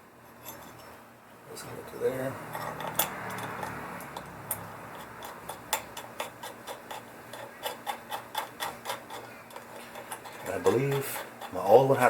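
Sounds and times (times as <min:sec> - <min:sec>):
hand ratchet clicking: 0:02.5 - 0:12.0.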